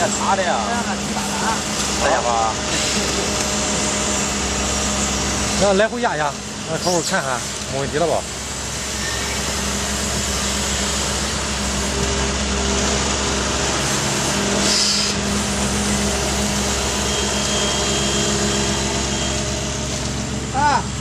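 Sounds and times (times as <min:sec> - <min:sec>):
excavator diesel engine running: 0:00.0 - 0:21.0
brief hiss: 0:14.6 - 0:15.2.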